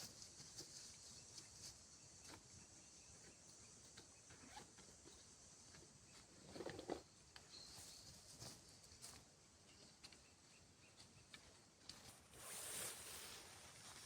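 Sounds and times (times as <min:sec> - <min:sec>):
rustle: 0:00.0 - 0:10.2, 0:10.9 - 0:14.0
faint high hiss: 0:12.2 - 0:14.0.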